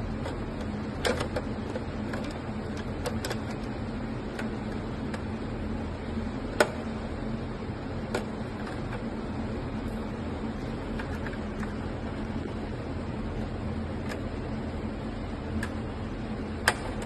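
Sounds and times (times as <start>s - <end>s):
steady low hum: 0.0s - 17.0s
clicks of fan parts handled: 0.2s - 5.3s, 16.6s - 17.0s.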